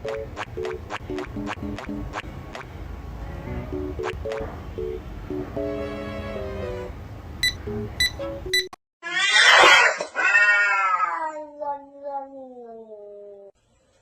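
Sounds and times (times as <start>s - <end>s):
light plucked music: 0.0s - 2.7s, 3.3s - 8.7s
cat yowling: 9.0s - 13.5s.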